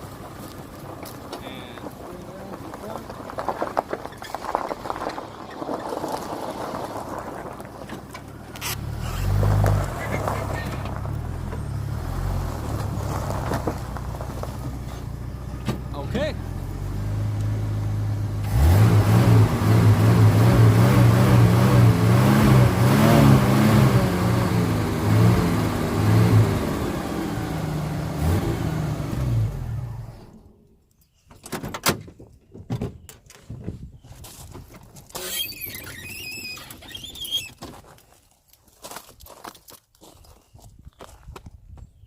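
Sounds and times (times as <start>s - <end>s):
car engine revving: 8.3s - 30.4s
brief squeak: 35.1s - 37.6s.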